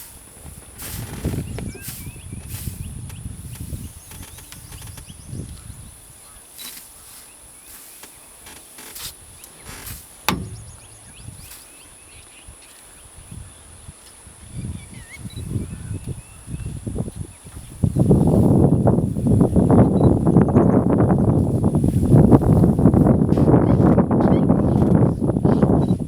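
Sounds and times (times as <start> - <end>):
sharp snap: 10.3 - 11.2
faint bird chirps: 10.4 - 13.6.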